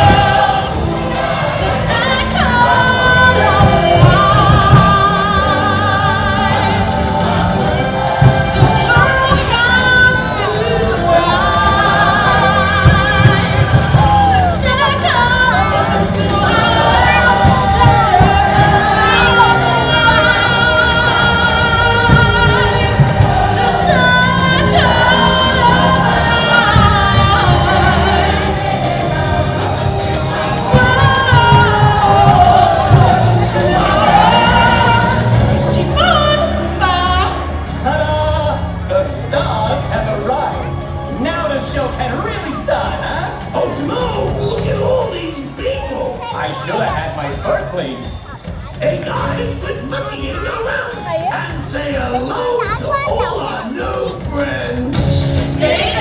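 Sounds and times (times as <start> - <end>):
low drums and bass: 0.0 - 39.9
choir-like voices singing: 0.0 - 56.0.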